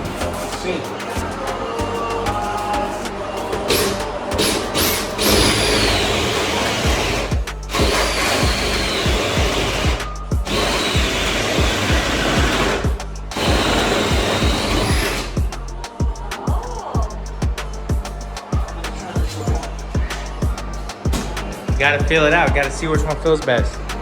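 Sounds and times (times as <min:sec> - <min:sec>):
background music with steady beat: 0:00.0 - 0:24.0
power drill whining: 0:03.7 - 0:15.4.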